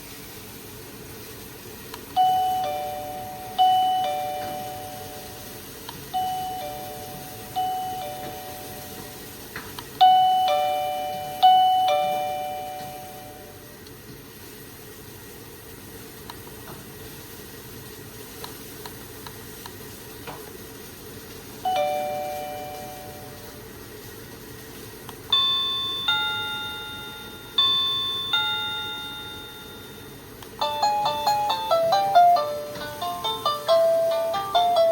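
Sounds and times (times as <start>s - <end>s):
two-tone doorbell chime: 2.2s - 9.4s, 10.0s - 13.7s, 21.6s - 23.6s, 25.3s - 34.9s.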